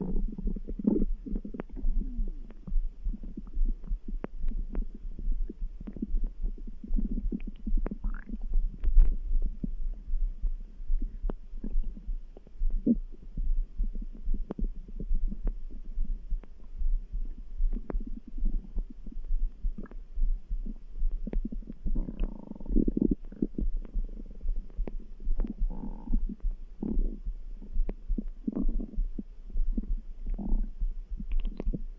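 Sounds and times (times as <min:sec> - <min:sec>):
stomach grumbling and gurgling: 0:00.0 - 0:10.1, 0:11.0 - 0:16.6, 0:17.2 - 0:20.0, 0:20.6 - 0:31.9
heartbeat pulsing: 0:00.0 - 0:31.9.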